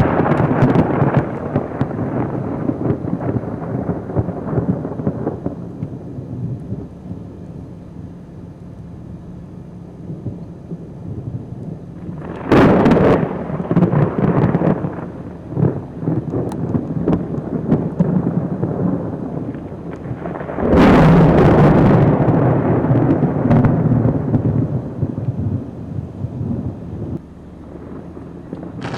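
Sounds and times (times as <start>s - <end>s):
loud crack of thunder: 0.0s - 7.7s, 10.0s - 28.9s
rolling thunder rumbles: 0.0s - 28.9s.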